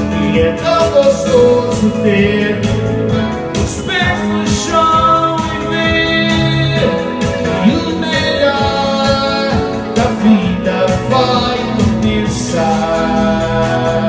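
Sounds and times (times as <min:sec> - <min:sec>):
live pop-rock band: 0:00.0 - 0:14.0
person singing: 0:00.0 - 0:14.0.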